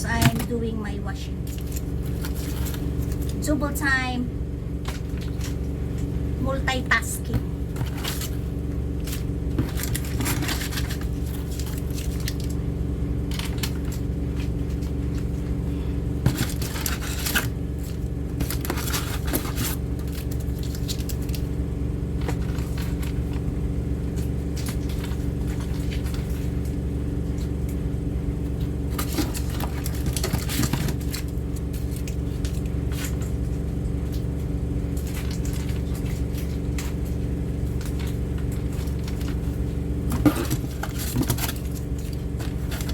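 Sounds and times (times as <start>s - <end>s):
washing machine humming: 0.0s - 42.9s
cans and packets handled: 37.8s - 42.9s.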